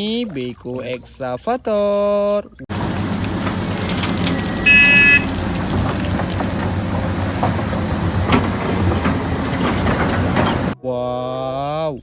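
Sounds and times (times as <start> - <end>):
excavator engine droning: 2.7 - 10.8
short high beep: 4.6 - 5.3.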